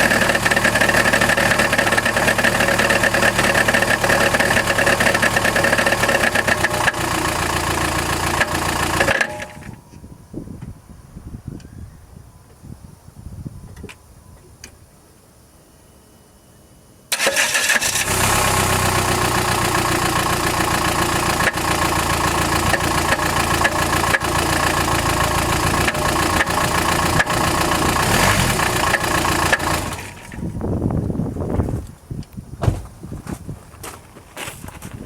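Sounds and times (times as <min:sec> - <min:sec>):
engine rattling knocks: 0:00.0 - 0:09.8, 0:18.3 - 0:30.6, 0:32.6 - 0:32.9
diesel engine starting and running: 0:00.0 - 0:09.9, 0:17.1 - 0:31.2.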